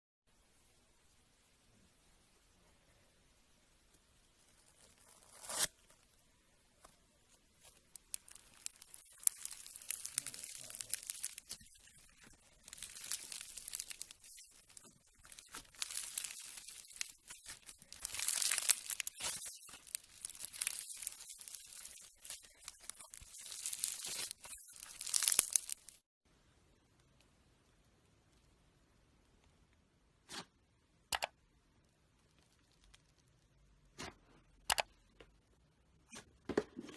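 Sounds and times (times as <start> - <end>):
slime crackling and popping: 7.6 - 26.0.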